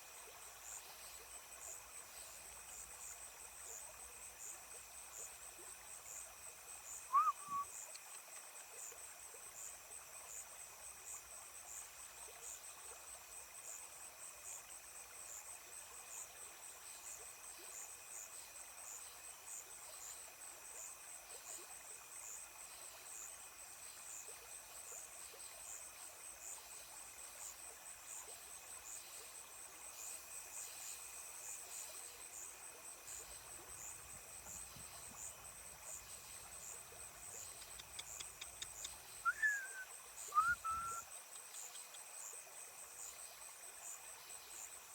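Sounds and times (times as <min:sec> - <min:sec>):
insects chirping: 0:00.0 - 0:44.9
brief short call: 0:07.1 - 0:07.6.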